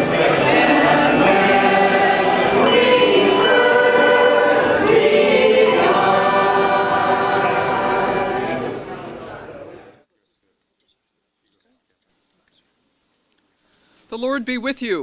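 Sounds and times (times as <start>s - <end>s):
group singing a hymn: 0.0s - 9.5s.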